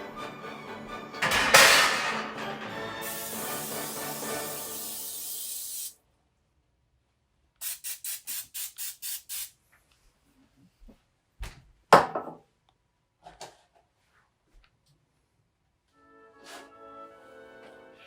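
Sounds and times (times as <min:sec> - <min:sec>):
aerosol spray hissing spurts: 0:03.0 - 0:06.0, 0:07.6 - 0:09.6.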